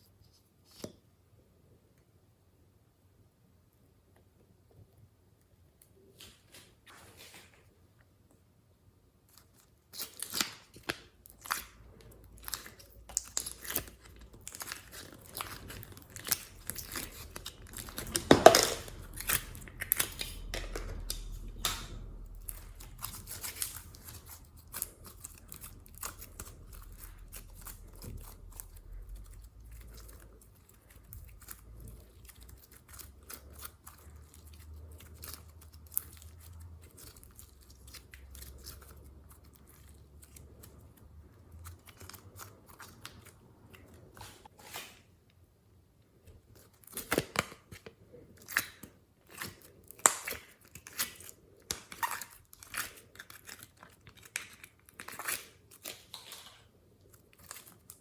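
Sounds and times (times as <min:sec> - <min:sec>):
sticky crackles and pops: 0:46.5 - 0:58.0.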